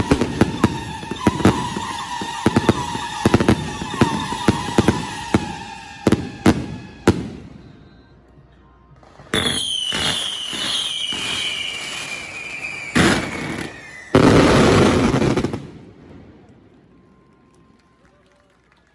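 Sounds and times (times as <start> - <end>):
dense firework burst: 0.0 - 7.9, 9.3 - 16.7
firework bangs: 0.0 - 8.0, 9.0 - 16.8
firework falling whistle: 0.0 - 8.3, 9.1 - 15.8.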